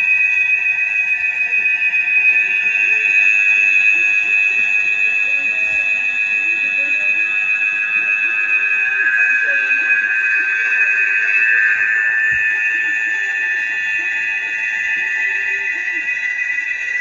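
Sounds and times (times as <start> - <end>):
faint wavering voice-like sounds: 0.0 - 17.0
high-pitched electronic tone: 0.0 - 17.0.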